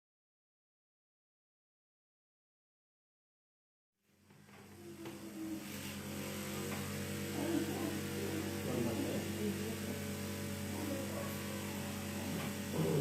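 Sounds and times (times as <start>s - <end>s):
electrical mains hum: 4.0s - 13.0s.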